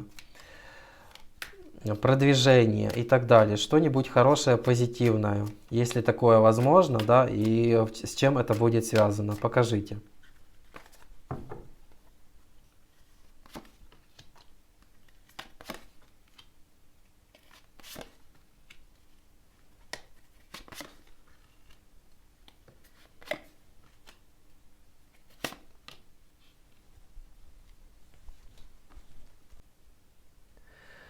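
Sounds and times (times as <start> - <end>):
cards snapping and slapping: 2.8 - 3.2, 4.3 - 9.4, 15.2 - 16.5, 19.9 - 21.1, 22.5 - 24.2, 25.3 - 26.0.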